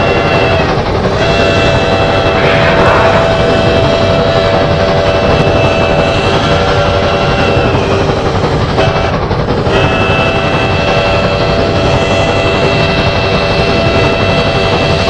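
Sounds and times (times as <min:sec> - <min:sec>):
dense rumbling noise: 0:01.0 - 0:06.2
whistle-like monster tones: 0:01.4 - 0:04.6.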